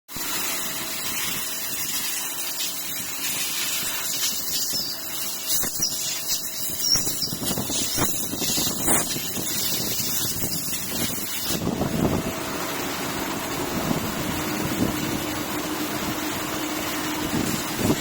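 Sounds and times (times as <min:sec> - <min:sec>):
machine cutting hiss: 0:00.1 - 0:11.8.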